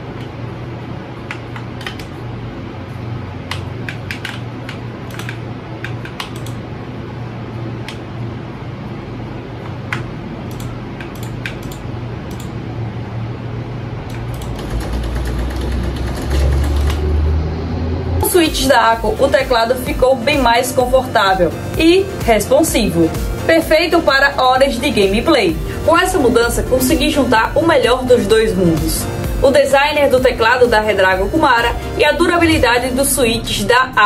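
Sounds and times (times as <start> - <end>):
steady low hum: 0.0 - 34.0
mechanical keyboard clicks: 1.3 - 2.1, 3.5 - 6.6, 9.9 - 12.5, 14.1 - 17.0.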